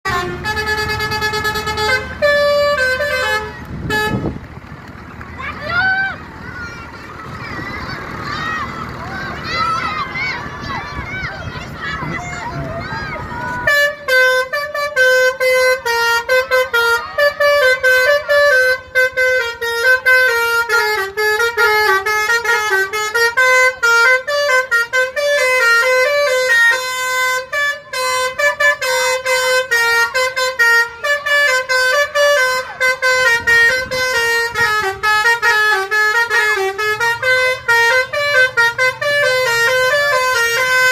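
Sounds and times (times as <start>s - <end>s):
musical bus air horn tune: 0.0s - 4.4s, 13.5s - 40.9s.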